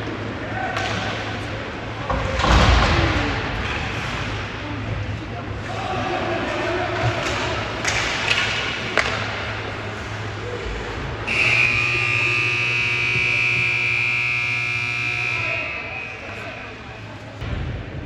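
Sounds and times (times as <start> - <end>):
arena buzzer blast: 11.3 - 16.8.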